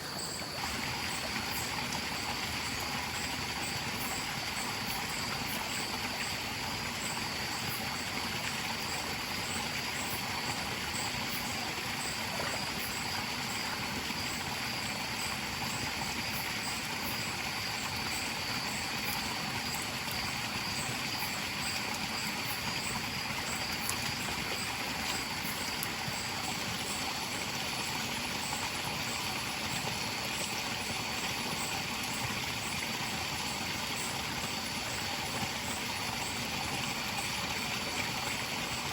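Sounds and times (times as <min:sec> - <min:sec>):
forest stream flowing: 0:00.0 - 0:38.9.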